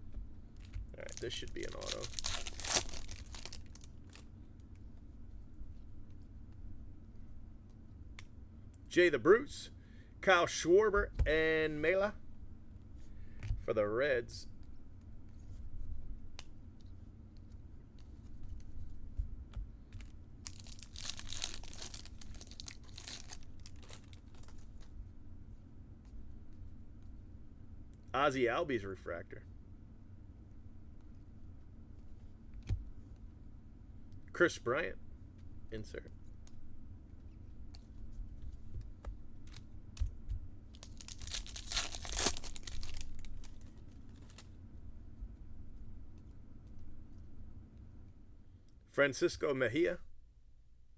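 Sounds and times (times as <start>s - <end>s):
foil wrapper tearing and crinkling: 0.9s - 4.3s, 20.4s - 24.8s, 40.8s - 44.5s
light clicks of cards handled: 35.3s - 40.9s.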